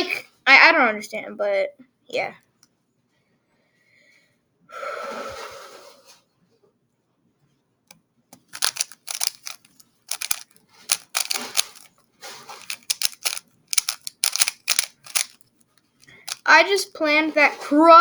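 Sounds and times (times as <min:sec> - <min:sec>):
puzzle cube plastic clicks: 0:08.4 - 0:11.9, 0:12.6 - 0:15.4, 0:16.0 - 0:16.5.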